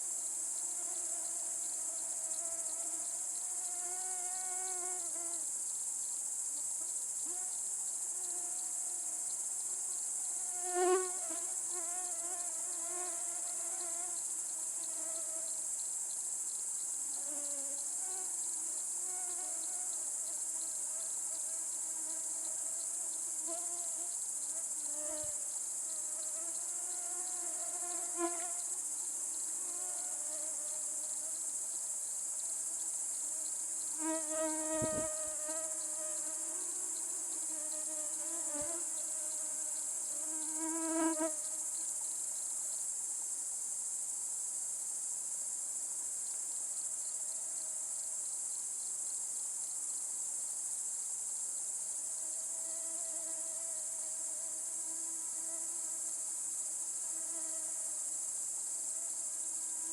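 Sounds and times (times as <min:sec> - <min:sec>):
insect chorus: 0:00.0 - 0:59.9
buzzing insect flying by: 0:07.3 - 0:15.6, 0:17.1 - 0:31.4, 0:32.6 - 0:41.9, 0:52.2 - 0:56.3.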